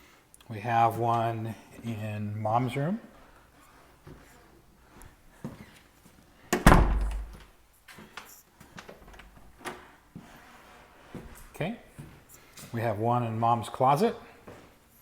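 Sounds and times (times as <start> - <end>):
interior door shutting: 6.5 - 7.5.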